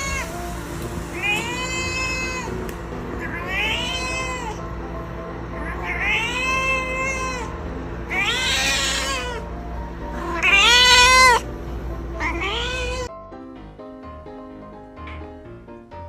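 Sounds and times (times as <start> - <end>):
cat meowing: 0.0 - 0.4, 1.1 - 2.6, 3.2 - 4.7, 5.5 - 11.5, 12.1 - 13.1
music: 0.0 - 16.0.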